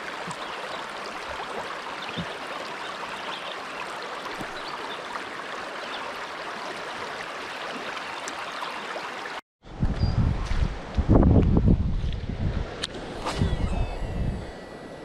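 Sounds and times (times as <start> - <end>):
wind rumbling on microphone: 9.6 - 15.0.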